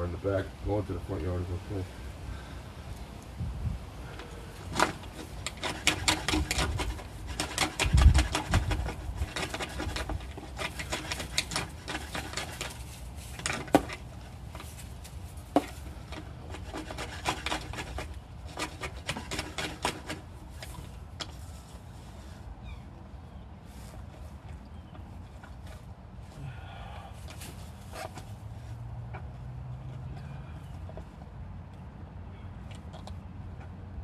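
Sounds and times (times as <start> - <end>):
rubbing and scraping clicks: 4.2 - 21.8.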